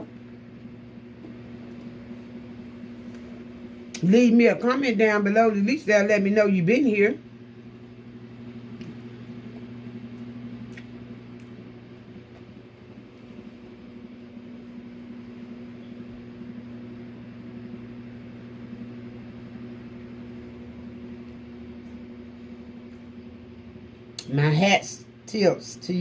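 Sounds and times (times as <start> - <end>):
fan humming: 0.0 - 26.0.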